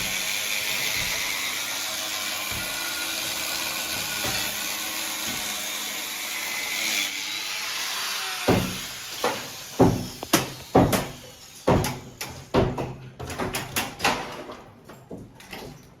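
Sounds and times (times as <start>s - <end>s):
sharp ringing knocks and bangs: 8.5s - 13.6s.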